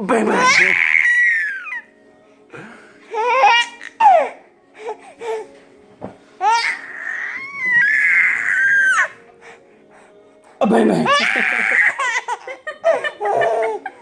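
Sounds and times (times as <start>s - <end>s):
baby laughing and squealing: 0.4s - 1.8s, 6.4s - 9.2s, 11.1s - 13.9s.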